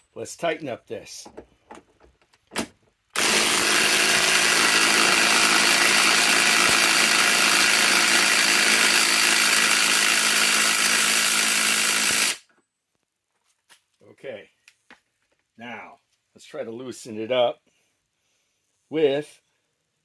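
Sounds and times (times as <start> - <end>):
impact wrench running: 3.2 - 12.5.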